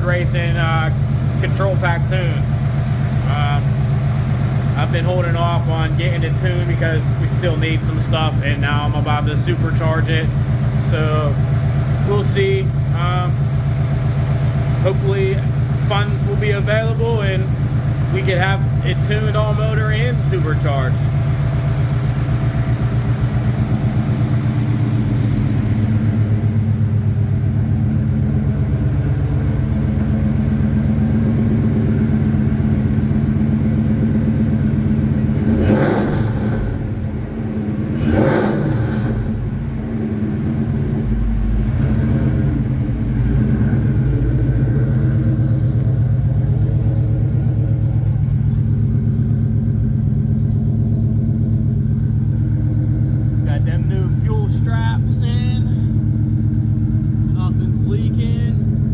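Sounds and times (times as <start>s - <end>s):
car engine idling: 0.0s - 58.9s
engine throttle blips: 0.0s - 58.9s.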